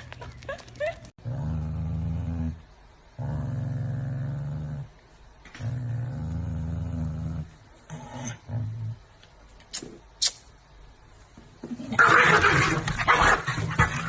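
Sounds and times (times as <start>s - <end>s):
animal growling low: 1.2s - 2.6s, 3.2s - 4.9s, 5.6s - 9.0s.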